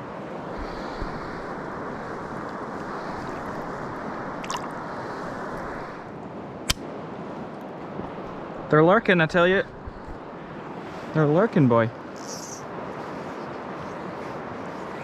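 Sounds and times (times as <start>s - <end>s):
river water running: 0.0s - 15.0s
sharp click: 6.7s - 6.9s.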